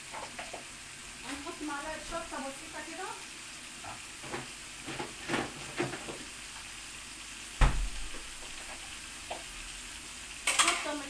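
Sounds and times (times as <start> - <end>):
meat sizzling in frying pan: 0.0 - 11.0
loud knock: 7.6 - 8.0.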